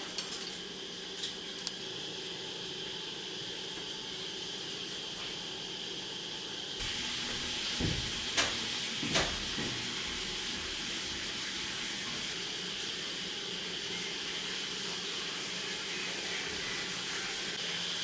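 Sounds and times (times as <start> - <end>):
steady hiss: 6.8 - 18.0
dull knock: 7.3 - 9.8.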